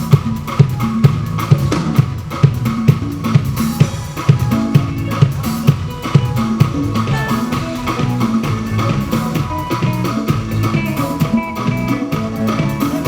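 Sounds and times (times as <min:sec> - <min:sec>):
drum kit beat: 0:00.0 - 0:13.0
live band playing upbeat groove: 0:00.0 - 0:13.0.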